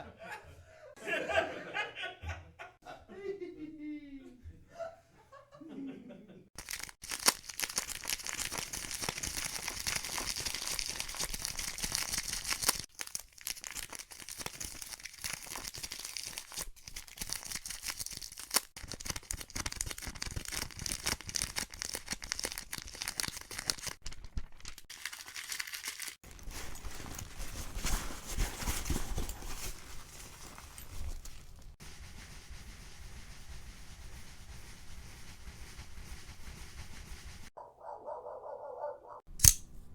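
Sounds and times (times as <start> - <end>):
dense crackling rustling noise: 6.6 - 37.5.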